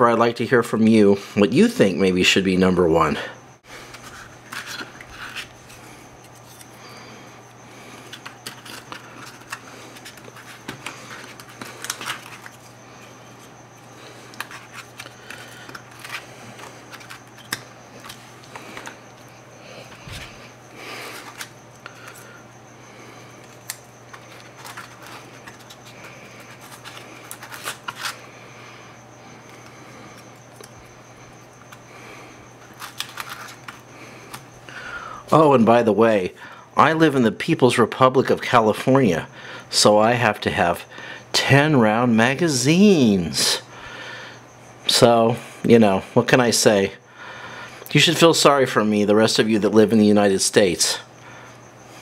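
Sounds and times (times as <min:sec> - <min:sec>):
faint high whine: 0:00.0 - 0:52.0
low electrical hum: 0:00.0 - 0:52.0
handling clicks and rubbing: 0:23.4 - 0:28.2.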